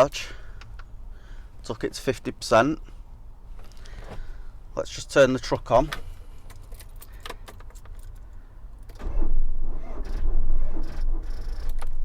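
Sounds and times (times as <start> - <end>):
diesel engine cranking: 5.8 - 12.0
keys rattling: 6.4 - 8.3
ignition clicking: 8.8 - 12.0.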